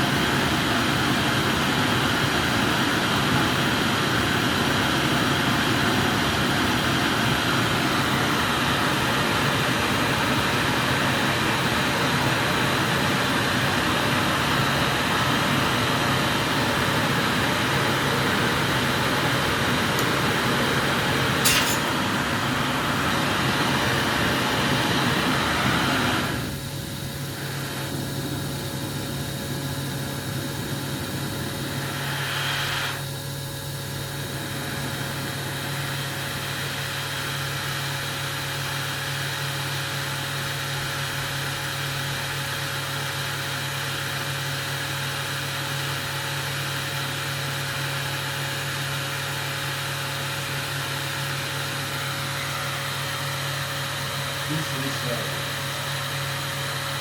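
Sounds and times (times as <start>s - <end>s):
gas burner flame hissing: 0.1s - 38.2s, 51.6s - 57.0s
burner valve click: 21.4s - 22.0s
low machine hum: 51.3s - 57.0s.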